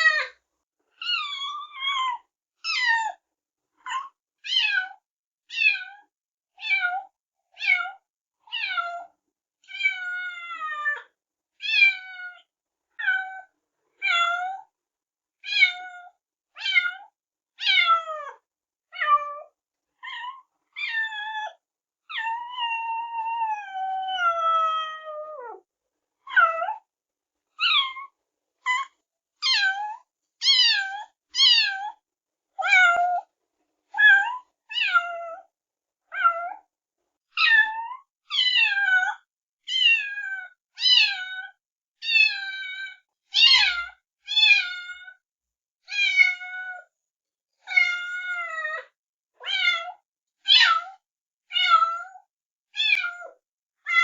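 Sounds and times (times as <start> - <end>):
kitten meowing: 28.7 - 31.9, 39.7 - 41.4.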